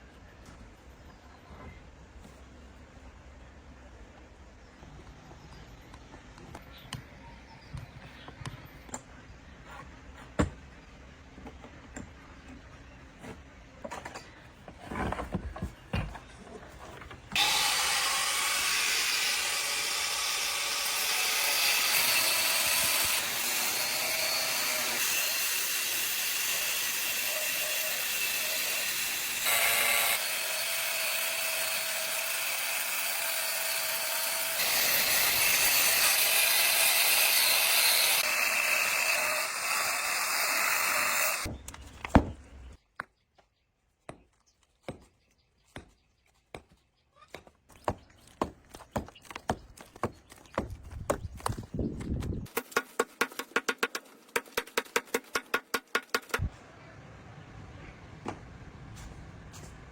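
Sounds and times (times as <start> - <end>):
electric power tool running: 17.4 - 41.5.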